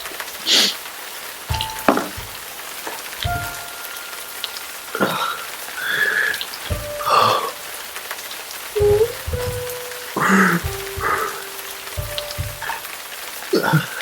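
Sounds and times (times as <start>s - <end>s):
rain hiss: 0.0s - 14.0s
short low knocks: 1.5s - 2.5s, 3.2s - 3.8s, 6.7s - 7.4s, 8.8s - 12.9s.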